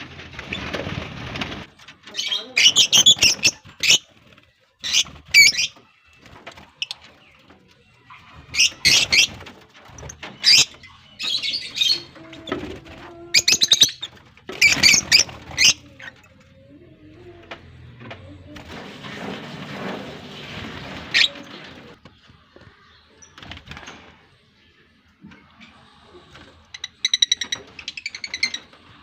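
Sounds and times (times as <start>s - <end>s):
lovebirds chirping shrilly: 2.1s - 4.2s, 10.4s - 12.2s, 13.4s - 16.2s.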